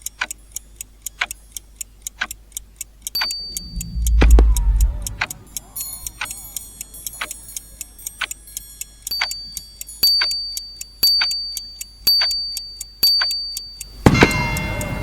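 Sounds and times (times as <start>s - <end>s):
rapid clock ticking: 0.0s - 15.0s
ringing beep: 3.2s - 5.2s.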